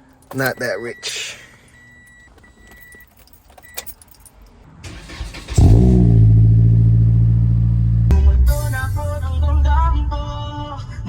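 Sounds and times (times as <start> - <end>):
car engine cranking and starting: 4.8 - 10.4
car engine idling: 4.8 - 10.4.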